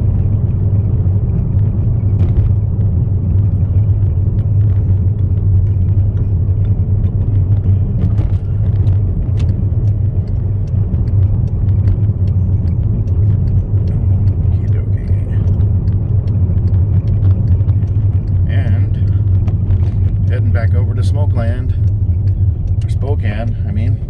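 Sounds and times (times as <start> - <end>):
vehicle engine and road noise: 0.0 - 24.0
faint ticks: 5.1 - 24.0.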